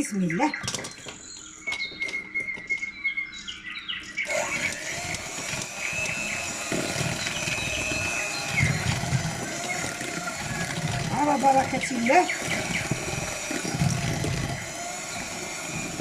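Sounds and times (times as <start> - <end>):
electric hand mixer whine: 4.2 - 16.0.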